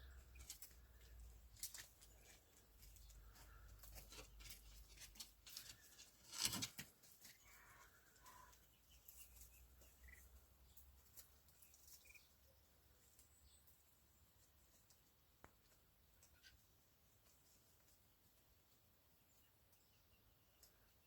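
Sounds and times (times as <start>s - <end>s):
rustling: 0.0s - 12.4s
chicks peeping: 7.2s - 15.4s.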